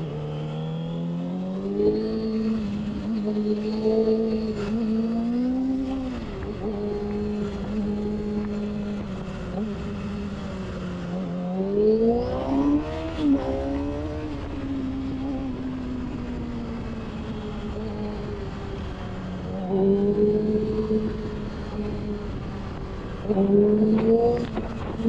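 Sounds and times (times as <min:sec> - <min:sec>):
motorcycle engine revving: 0:00.0 - 0:25.0
wind on microphone: 0:20.0 - 0:25.0.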